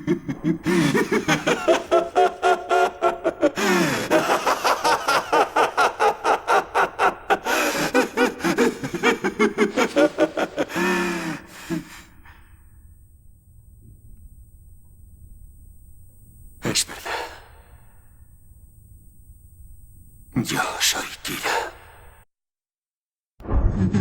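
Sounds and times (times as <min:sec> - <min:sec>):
man laughing maniacally: 0:00.0 - 0:12.4
drawn breaths: 0:10.6 - 0:12.8.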